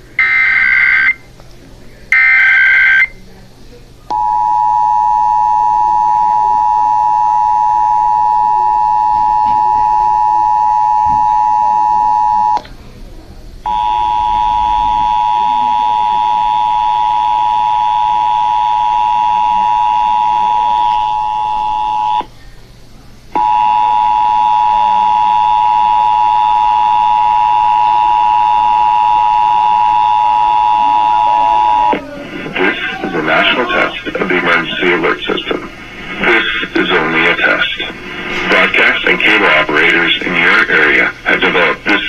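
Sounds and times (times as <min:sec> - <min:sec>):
two-tone alert signal: 0:13.7 - 0:22.2.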